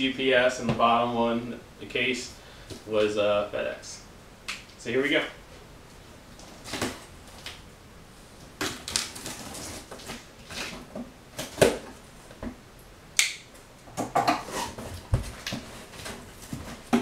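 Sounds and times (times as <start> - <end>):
cardboard rustling and scraping: 8.7 - 11.6, 14.3 - 17.0
sharp snaps: 13.2 - 13.6.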